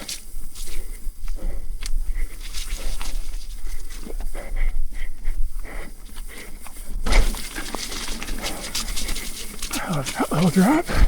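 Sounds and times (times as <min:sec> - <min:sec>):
mountain bike rattling: 0:07.0 - 0:10.8.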